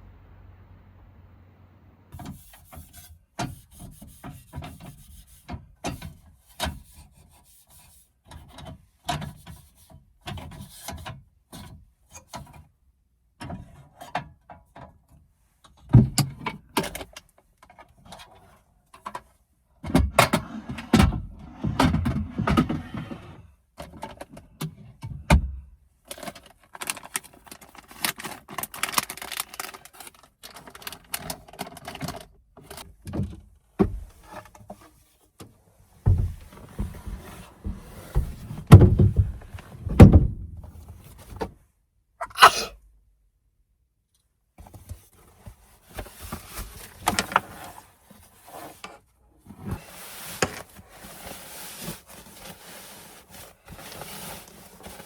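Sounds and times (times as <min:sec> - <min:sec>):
dense rustling: 0:35.7 - 0:41.3
heavy thuds: 0:36.0 - 0:40.8.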